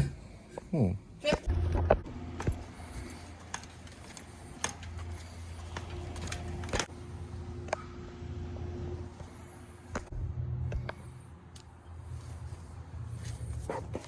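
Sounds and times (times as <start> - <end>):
low steady hum: 0.0 - 14.0
sharp clicks and knocks of handling: 2.4 - 6.9.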